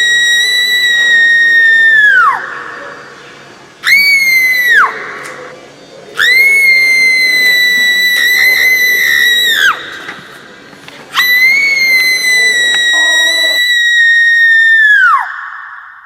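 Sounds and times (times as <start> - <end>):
woman screaming: 12.1 - 15.2.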